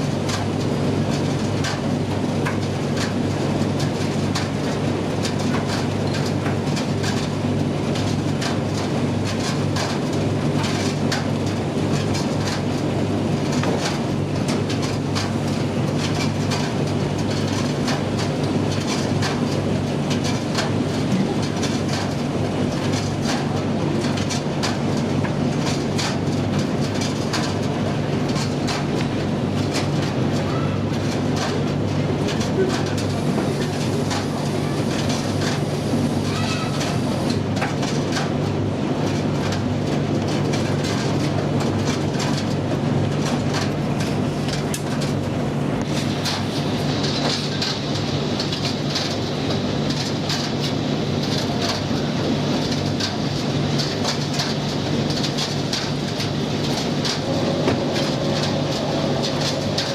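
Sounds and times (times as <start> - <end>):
tumble dryer motor hum: 0.0 - 59.9
load knocking in dryer drum: 53.8 - 59.9.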